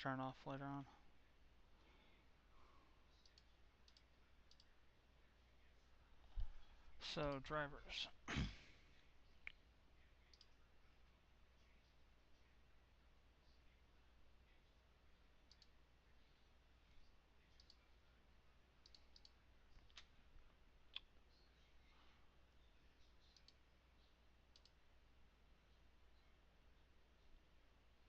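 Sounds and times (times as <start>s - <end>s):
computer mouse clicks: 3.2s - 4.7s, 10.3s - 10.6s, 15.5s - 15.8s, 17.6s - 17.8s, 18.8s - 20.1s, 23.2s - 23.6s, 24.5s - 24.8s.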